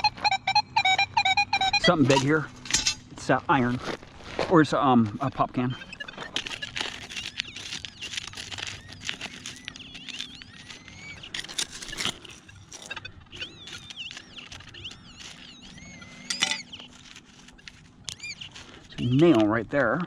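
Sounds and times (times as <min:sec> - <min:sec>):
metal detector warbling tones: 0:00.0 - 0:03.7, 0:05.4 - 0:19.3
digging scrapes and clinks: 0:02.1 - 0:03.1, 0:06.2 - 0:13.0, 0:13.6 - 0:19.4.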